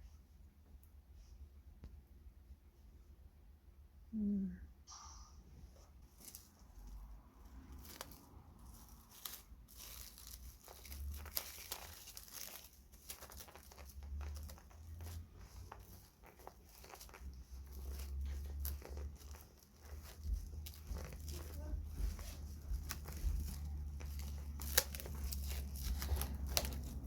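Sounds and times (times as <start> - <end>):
crinkly rustling: 5.8 - 27.0.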